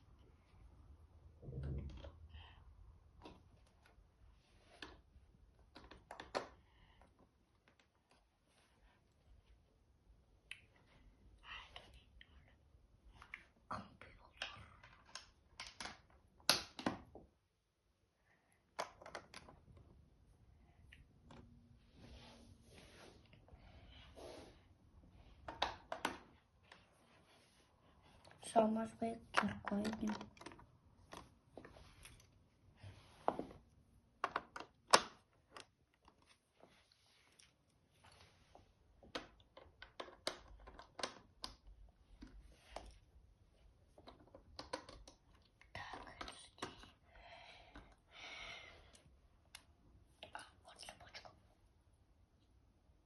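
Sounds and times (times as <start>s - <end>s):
plastic lego pieces clicking: 29.3s - 31.2s, 39.2s - 41.6s.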